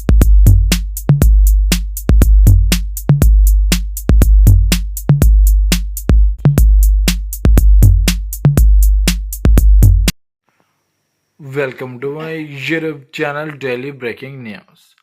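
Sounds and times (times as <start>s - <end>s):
electronic music with drum-machine beat: 0.0s - 10.1s.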